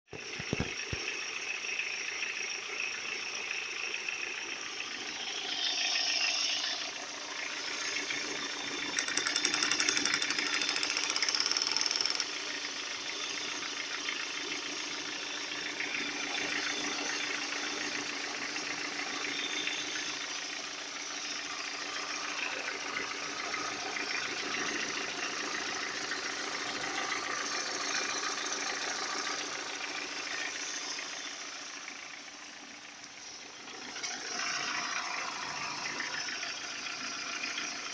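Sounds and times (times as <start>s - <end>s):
car engine knocking: 4.8s - 14.8s.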